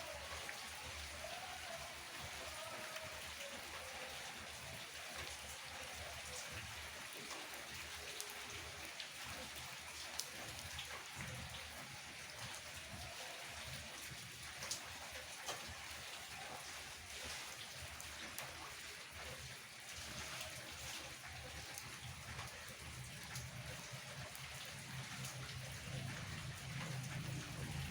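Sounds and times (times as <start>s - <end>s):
rain falling: 0.0s - 27.9s
raindrops ticking sharply: 21.1s - 27.9s.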